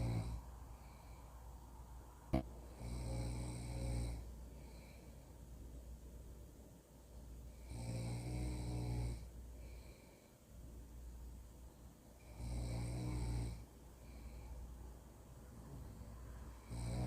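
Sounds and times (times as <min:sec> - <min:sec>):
person snoring loudly: 0:00.0 - 0:00.4, 0:02.8 - 0:04.2, 0:16.6 - 0:17.0
steady low hum: 0:00.0 - 0:17.0.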